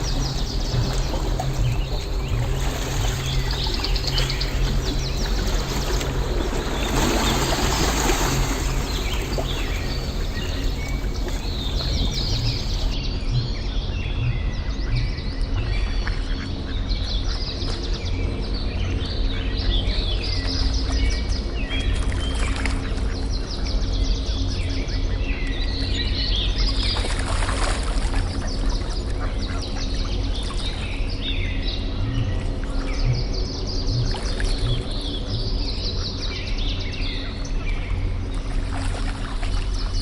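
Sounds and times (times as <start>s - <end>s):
birds chirping: 0.0s - 16.0s
low hum: 0.0s - 25.2s, 25.8s - 40.0s.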